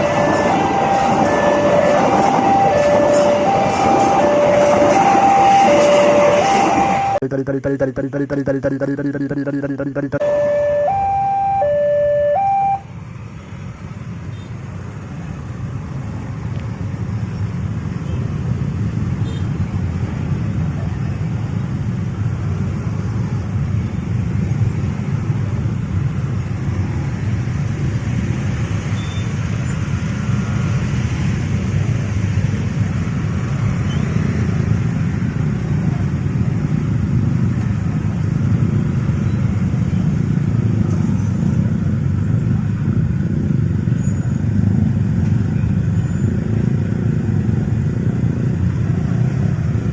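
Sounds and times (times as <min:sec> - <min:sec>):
moving vehicle rumble: 0:00.0 - 0:49.9.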